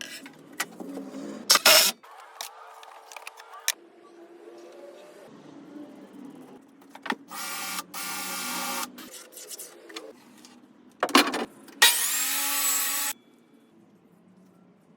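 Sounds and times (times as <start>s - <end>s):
shop handling noises: 0.0s - 3.8s, 9.0s - 11.9s
power tool running: 11.8s - 13.2s.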